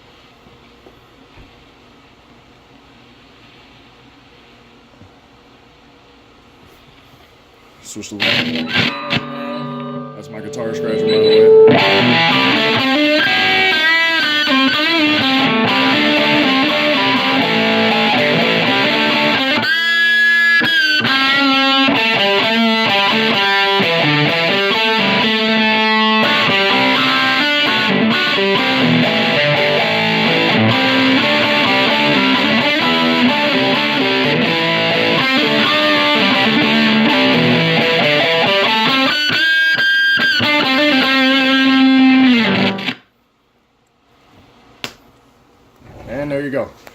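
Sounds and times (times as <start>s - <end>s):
electric guitar riffs: 8.1s - 43.0s.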